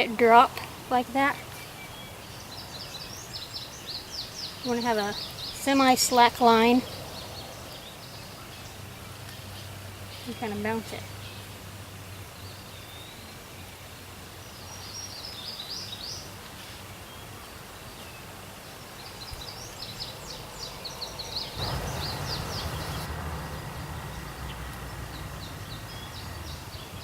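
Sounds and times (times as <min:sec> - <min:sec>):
outdoor hiss: 0:00.0 - 0:27.0
songbirds chirping: 0:00.0 - 0:27.0
rush of noise: 0:20.1 - 0:27.0.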